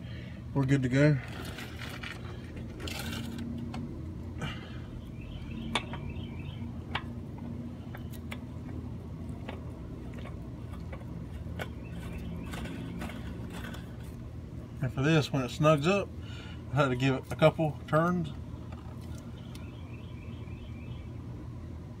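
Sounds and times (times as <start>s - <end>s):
oil filter clicks and scrapes: 1.2s - 4.0s, 6.8s - 14.3s.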